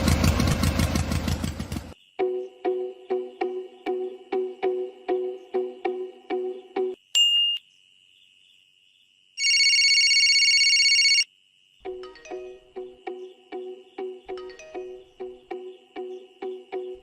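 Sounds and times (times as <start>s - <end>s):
plucked background music: 2.2s - 7.0s, 11.8s - 17.0s
electronic trilling ringtone: 9.4s - 11.3s.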